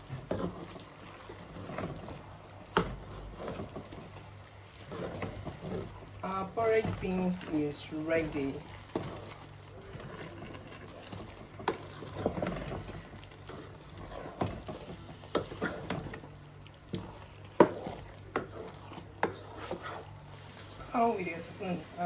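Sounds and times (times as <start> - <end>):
spoon stirring thick porridge: 0.0 - 22.0
spoon knocking and scraping pot: 4.8 - 20.0.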